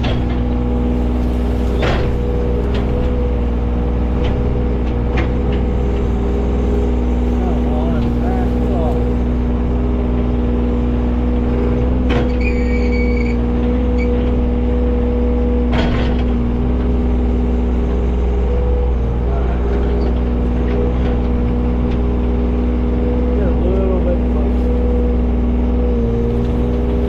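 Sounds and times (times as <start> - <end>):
excavator diesel engine running: 0.0 - 27.0
brief high squeal: 12.3 - 13.4.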